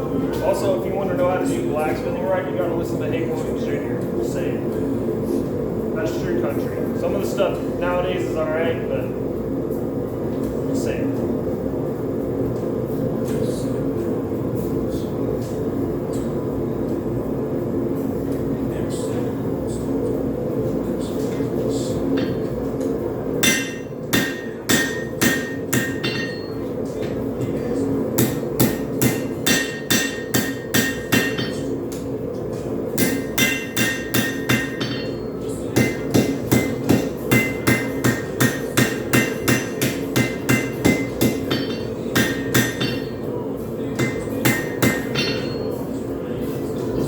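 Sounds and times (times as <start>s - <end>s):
hammer striking metal on anvil: 22.1s - 22.5s, 23.4s - 26.7s, 28.2s - 31.8s, 33.0s - 43.3s, 44.0s - 45.8s.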